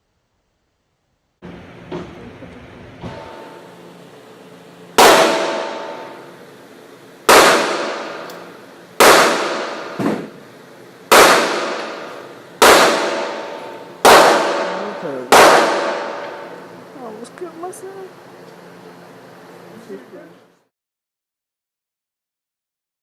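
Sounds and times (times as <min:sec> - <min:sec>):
faint gunshot: 0:05.0 - 0:06.2, 0:07.3 - 0:08.3, 0:09.0 - 0:10.4, 0:11.1 - 0:16.4
gunshots echoing indoors: 0:05.0 - 0:06.4, 0:07.2 - 0:10.4, 0:11.1 - 0:16.7.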